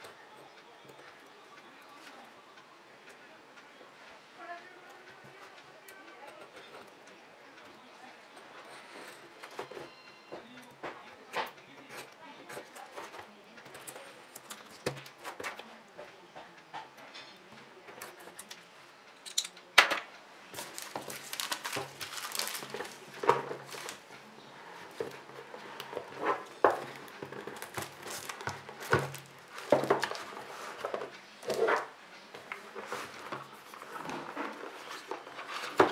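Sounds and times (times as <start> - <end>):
box and packaging handling: 20.5 - 35.9.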